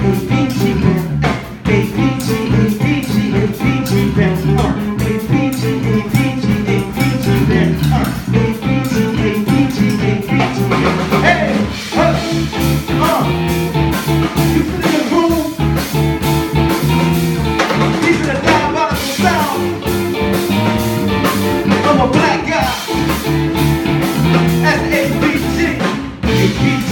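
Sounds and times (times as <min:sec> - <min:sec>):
electric guitar bending notes: 0:00.0 - 0:26.9
live band playing: 0:00.0 - 0:26.9.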